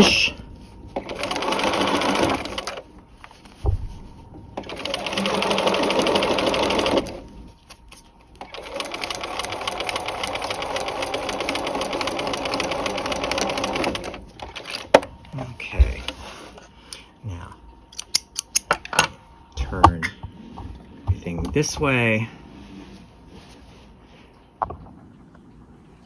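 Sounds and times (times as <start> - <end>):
sewing machine stitching: 1.0 - 2.8, 4.6 - 7.2, 8.4 - 14.9
short low thump: 3.6 - 4.4.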